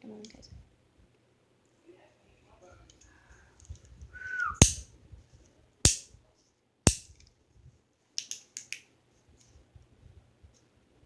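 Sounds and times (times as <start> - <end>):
fidget toy snapping: 4.6 - 4.8, 5.9 - 6.1, 6.9 - 7.1, 8.2 - 8.8
fidget toy light clicks: 8.2 - 8.8.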